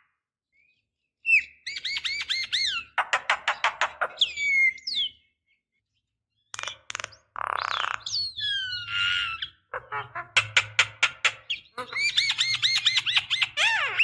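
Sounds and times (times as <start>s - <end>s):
myna bird calling: 6.5s - 14.0s.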